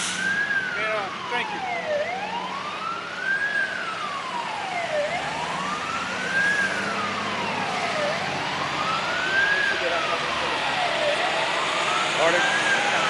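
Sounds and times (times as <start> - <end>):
emergency siren wailing: 0.0 - 13.0
trucks rumbling past: 0.0 - 13.0.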